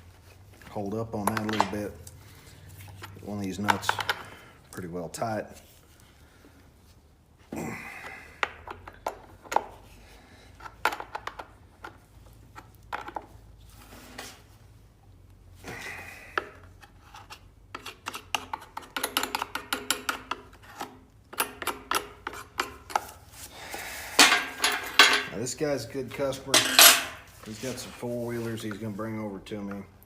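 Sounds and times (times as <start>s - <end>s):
metal tools clinking and knocking: 24.2s - 25.4s, 26.4s - 27.3s.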